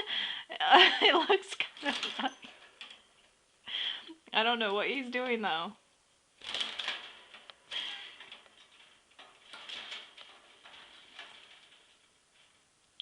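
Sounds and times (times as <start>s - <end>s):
bird clambering in wire cage: 1.7s - 3.1s, 6.4s - 12.4s.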